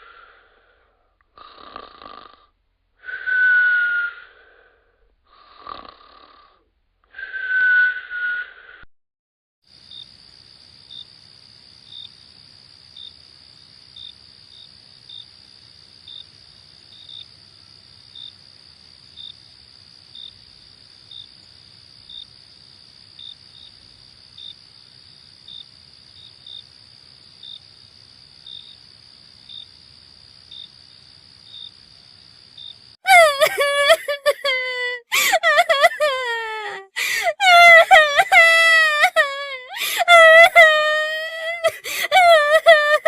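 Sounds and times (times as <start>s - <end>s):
crickets chirping: 9.7s - 43.0s.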